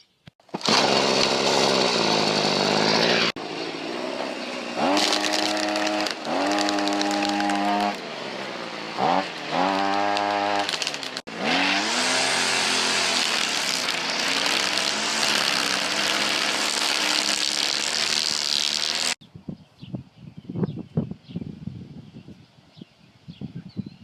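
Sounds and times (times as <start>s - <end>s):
string trimmer engine revving: 0.4s - 19.2s.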